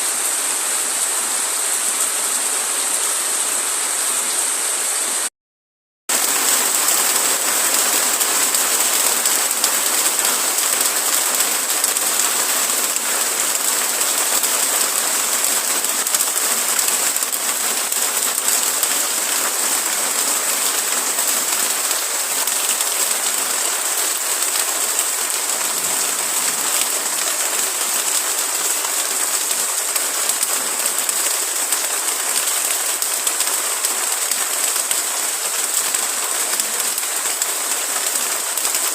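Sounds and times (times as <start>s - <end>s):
steady rain falling: 0.0s - 5.3s, 6.1s - 38.9s.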